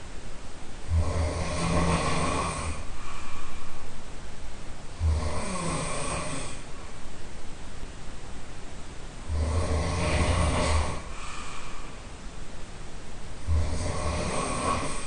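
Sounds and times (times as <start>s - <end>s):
person snoring with rattle: 0.9s - 2.9s, 5.0s - 6.7s, 9.2s - 11.4s, 13.4s - 15.0s.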